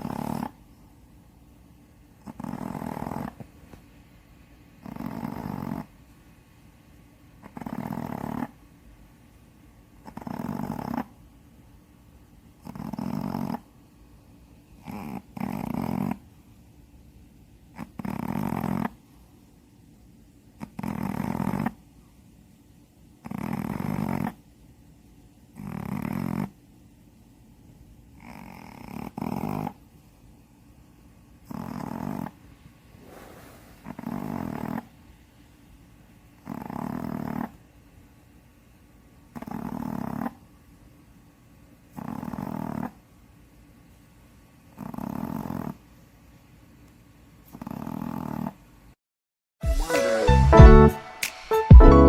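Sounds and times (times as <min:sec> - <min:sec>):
dog snoring: 0:00.0 - 0:00.6, 0:02.2 - 0:03.5, 0:04.8 - 0:06.0, 0:07.4 - 0:08.6, 0:10.0 - 0:11.2, 0:12.6 - 0:13.7, 0:14.8 - 0:16.3, 0:17.7 - 0:19.0, 0:20.6 - 0:21.8, 0:23.2 - 0:24.4, 0:25.5 - 0:26.6, 0:28.2 - 0:29.8, 0:31.4 - 0:34.9, 0:36.4 - 0:37.6, 0:39.3 - 0:40.4, 0:41.9 - 0:43.0, 0:44.7 - 0:45.8, 0:47.5 - 0:48.6
dog breathing softly: 0:31.5 - 0:34.9.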